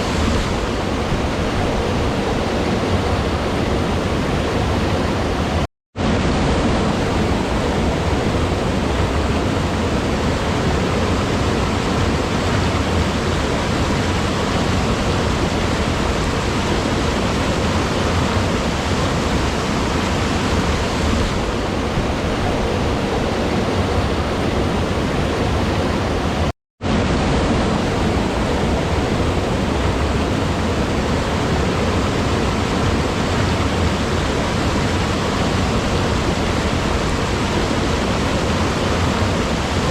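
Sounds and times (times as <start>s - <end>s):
flowing water rushing: 0.0s - 39.9s.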